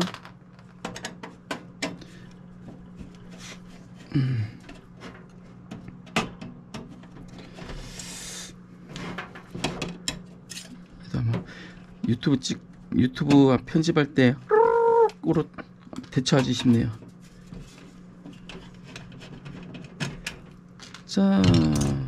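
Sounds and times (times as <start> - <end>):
clicks and knocks of handling: 0.0 - 2.1, 4.6 - 7.4, 15.6 - 22.0
steady low hum: 0.0 - 22.0.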